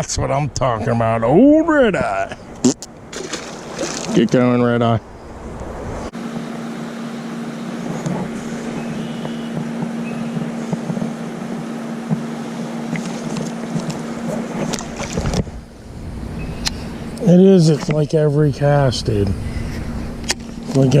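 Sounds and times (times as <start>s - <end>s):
low hum: 1.1s - 21.0s
creek water rushing over rocks: 3.1s - 4.3s.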